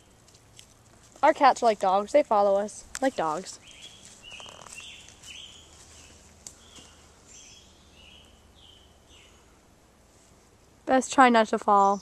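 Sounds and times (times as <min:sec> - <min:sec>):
bird chirping: 0:02.7 - 0:09.5.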